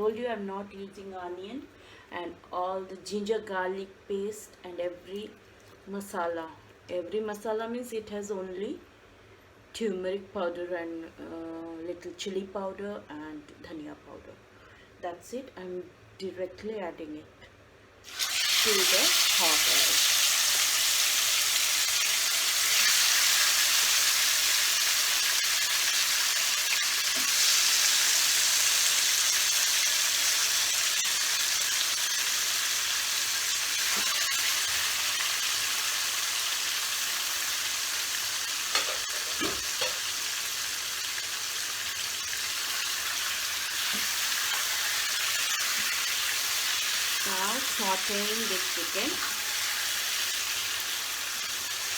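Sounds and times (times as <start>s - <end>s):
chicken sizzling in hot oil: 18.0s - 51.9s.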